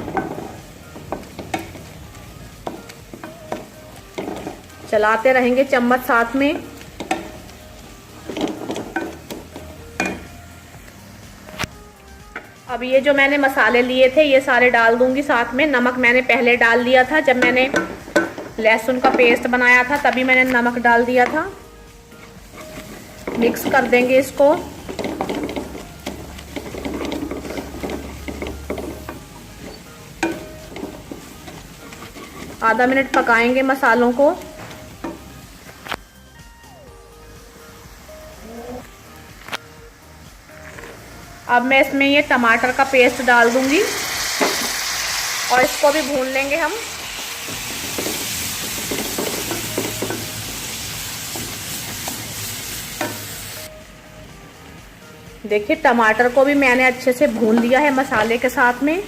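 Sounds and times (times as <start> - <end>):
light sizzling in oil: 0.0 - 36.8, 37.4 - 59.0
spoon scraping a pan: 22.1 - 33.5.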